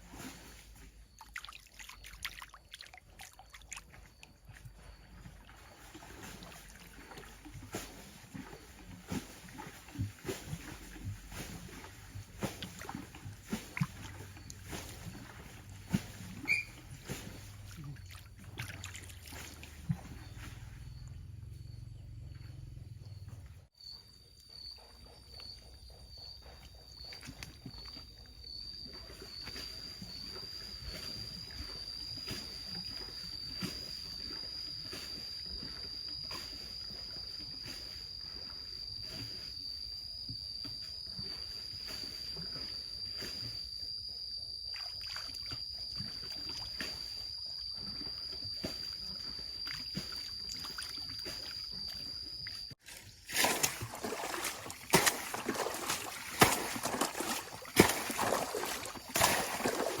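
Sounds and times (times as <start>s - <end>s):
water splashing and sloshing: 0.0s - 21.5s, 25.3s - 60.0s.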